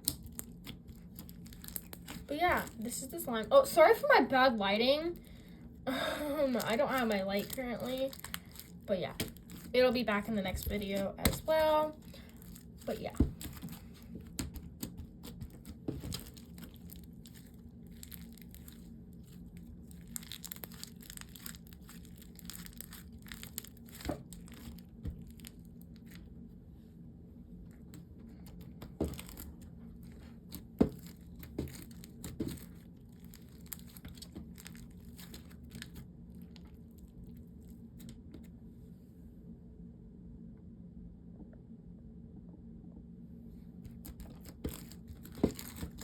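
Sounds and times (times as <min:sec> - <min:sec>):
slime squished by hand crackling: 0:00.0 - 0:02.8, 0:06.4 - 0:26.1.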